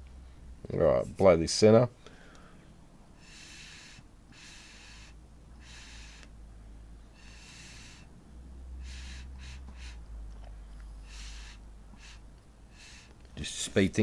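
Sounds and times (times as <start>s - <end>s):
breathy blows by mouth: 7.1s - 8.1s, 8.8s - 10.2s, 11.0s - 13.2s.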